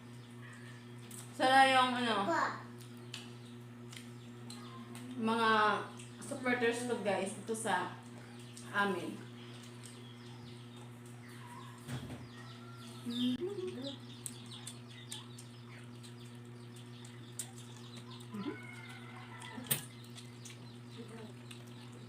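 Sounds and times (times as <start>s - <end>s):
steady electrical hum: 0.0s - 22.0s
bird chirps: 9.4s - 19.1s
person chewing: 13.6s - 22.0s.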